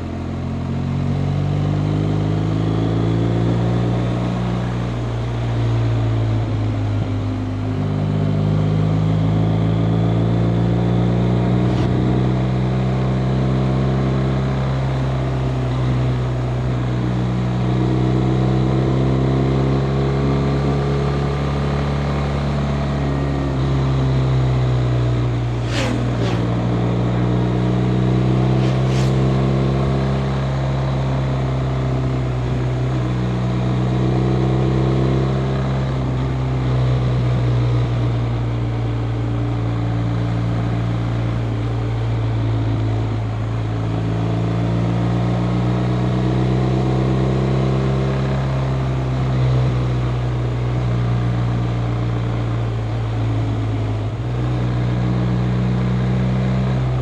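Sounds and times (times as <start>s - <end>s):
motorcycle engine running: 24.5s - 29.7s
vehicles whooshing past: 25.0s - 30.7s.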